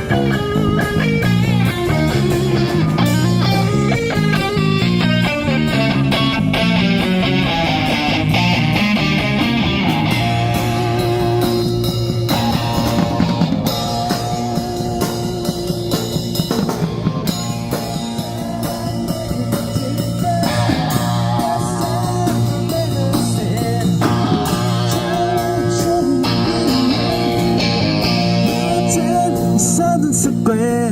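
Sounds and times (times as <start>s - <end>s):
bass guitar: 0.0s - 30.9s
drums with steady beat: 0.0s - 30.9s
electric guitar: 0.0s - 30.9s.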